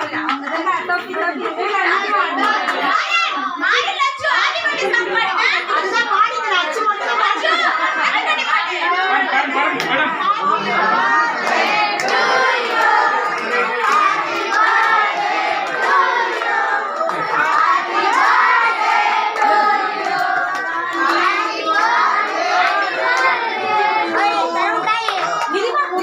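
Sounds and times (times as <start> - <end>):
crowd clapping: 0.0 - 3.3, 9.7 - 26.0
people singing and calling out: 0.0 - 26.0.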